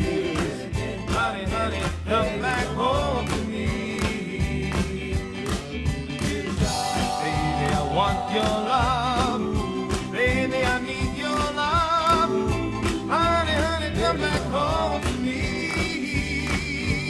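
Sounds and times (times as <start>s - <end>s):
band with drum beat: 0.0s - 17.0s
vocal group singing: 0.0s - 17.0s.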